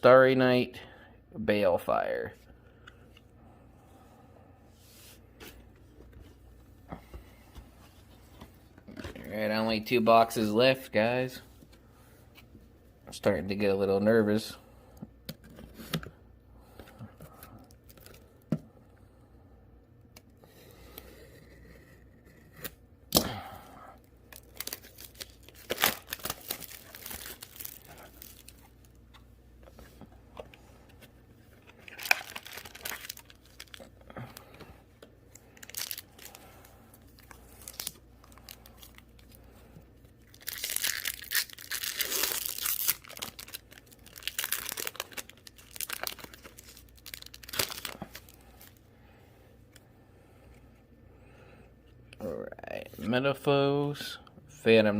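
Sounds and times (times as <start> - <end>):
wrappers tearing and crinkling: 24.3 - 29.0, 31.6 - 33.9, 35.4 - 39.4, 40.2 - 48.8.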